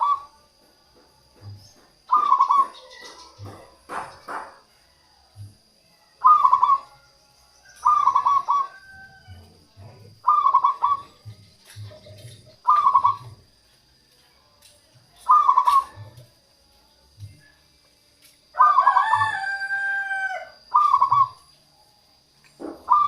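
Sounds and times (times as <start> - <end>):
dove cooing: 0.0 - 0.4, 1.4 - 4.6, 6.2 - 7.0, 7.8 - 13.5, 15.2 - 16.2, 18.6 - 21.5, 22.6 - 23.0.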